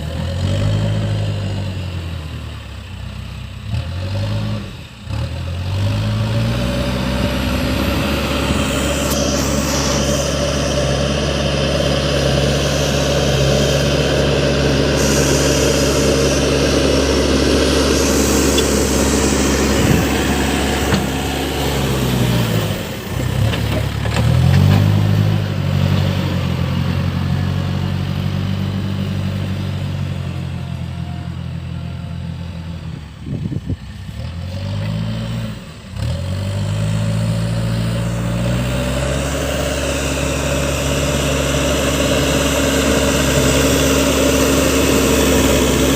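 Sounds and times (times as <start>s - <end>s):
diesel engine running: 0.0s - 45.9s.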